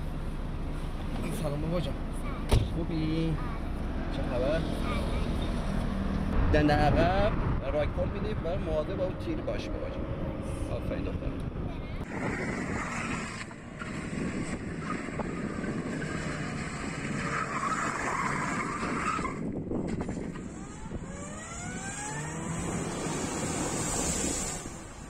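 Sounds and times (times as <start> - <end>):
car engine revving: 12.0 - 25.0.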